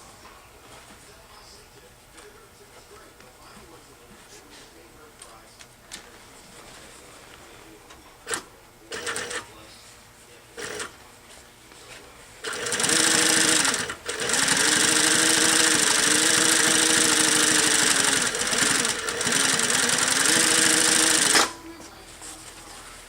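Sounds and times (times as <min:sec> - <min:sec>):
sewing machine clattering: 0:08.3 - 0:09.4, 0:10.6 - 0:10.9, 0:12.4 - 0:21.6.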